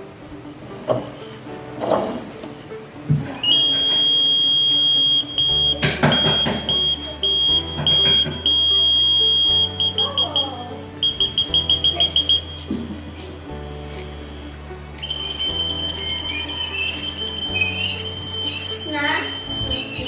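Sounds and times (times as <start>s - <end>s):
background music with low bass: 0.0s - 20.0s
electronic buzzer tone and beeps: 3.4s - 12.6s, 15.0s - 20.0s.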